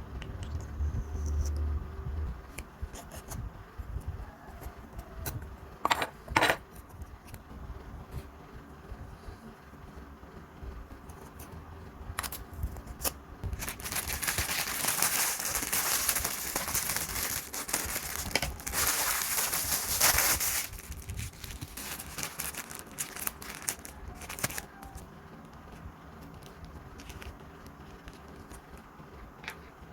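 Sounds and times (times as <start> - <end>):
plastic wrap crinkling: 13.0 - 25.0.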